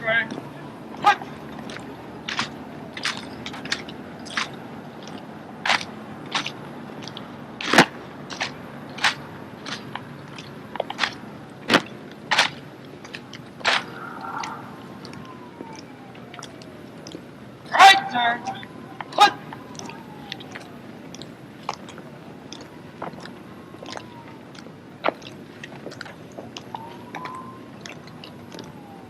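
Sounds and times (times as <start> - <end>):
rifles smacking and clacking: 1.0 - 14.0.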